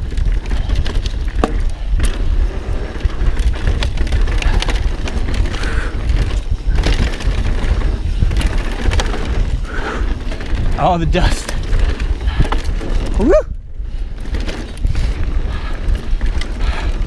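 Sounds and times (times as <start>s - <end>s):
bike clicks and rattles: 0.0s - 17.0s
wind buffeting microphone: 0.0s - 17.0s.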